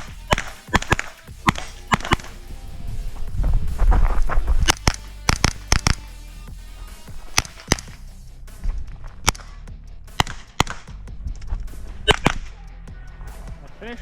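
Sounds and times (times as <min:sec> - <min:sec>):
carbine gunshots: 0:00.0 - 0:02.4, 0:04.6 - 0:06.1, 0:07.2 - 0:08.0, 0:09.2 - 0:11.0, 0:12.1 - 0:12.6.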